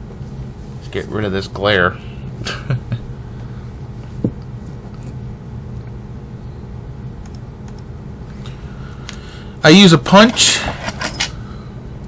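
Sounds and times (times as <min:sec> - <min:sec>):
low background hum: 0:00.0 - 0:12.0.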